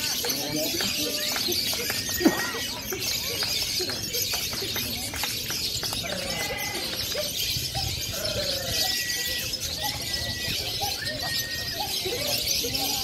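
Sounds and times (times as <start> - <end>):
lovebirds chattering and trilling: 0.0 - 13.0
lower wavering bird calls: 5.8 - 13.0.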